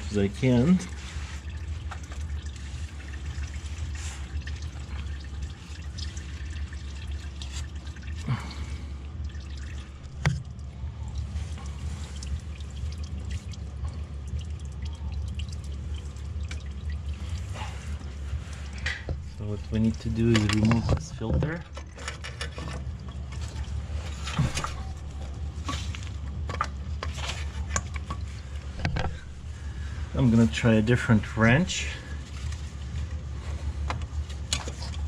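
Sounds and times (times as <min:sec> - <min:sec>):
steady low hum: 0:00.0 - 0:35.0
oil dripping into a pan: 0:00.8 - 0:18.1.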